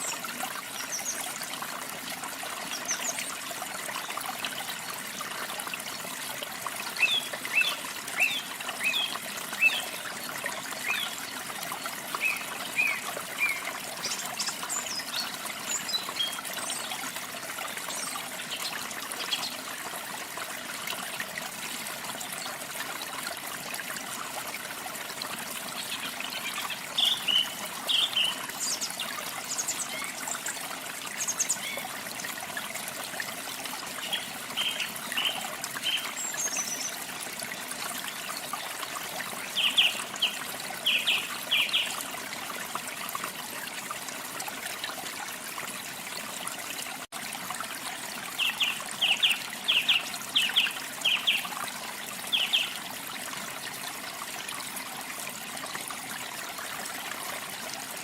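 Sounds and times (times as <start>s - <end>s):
small waterfall splashing: 0.0s - 58.0s.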